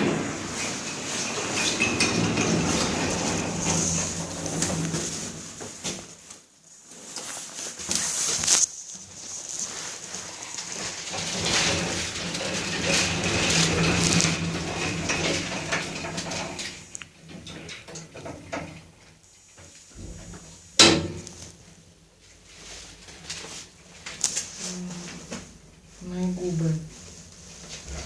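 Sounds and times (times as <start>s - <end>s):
lift door creaking and grinding: 0.0s - 6.0s, 10.2s - 18.9s.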